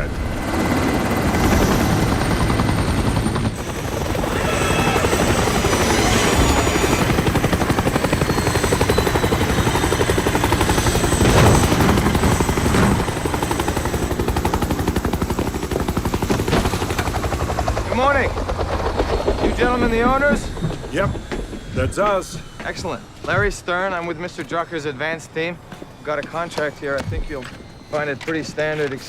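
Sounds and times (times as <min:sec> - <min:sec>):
helicopter rotors chopping: 0:00.0 - 0:29.0.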